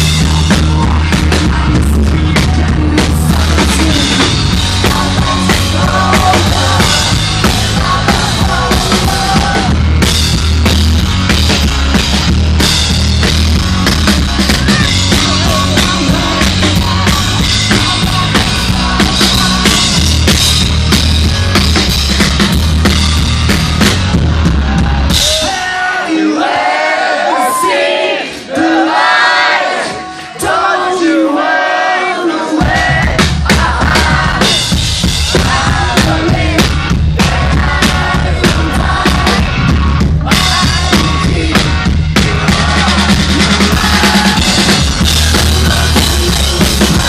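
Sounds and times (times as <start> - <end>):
crowd cheering and screaming: 0.0 - 20.0, 21.2 - 30.6, 42.2 - 47.0
live rock band playing: 0.0 - 26.0, 27.3 - 28.0, 32.4 - 47.0.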